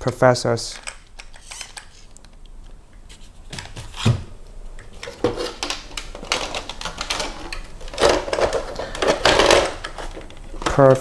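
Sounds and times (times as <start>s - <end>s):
plastic parts clicking and clattering: 0.0s - 2.4s, 4.8s - 11.0s.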